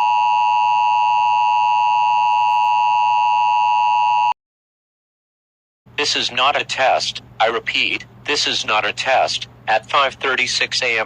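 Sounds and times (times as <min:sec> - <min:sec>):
loud two-tone alarm: 0:00.0 - 0:04.4.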